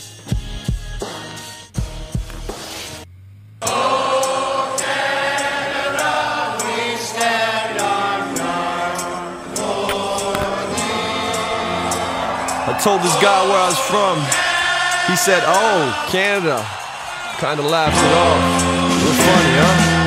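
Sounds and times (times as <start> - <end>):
drum-backed music track: 0.0 - 3.0, 17.7 - 20.0
sustained chords: 3.0 - 14.4, 17.9 - 20.0.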